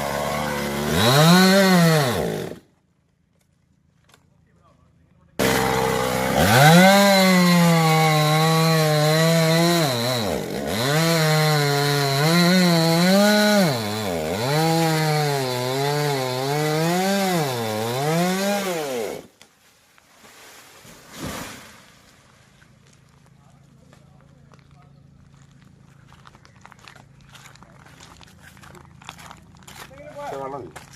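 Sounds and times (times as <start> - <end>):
chainsaw cutting wood: 0.0 - 2.7, 5.4 - 19.4.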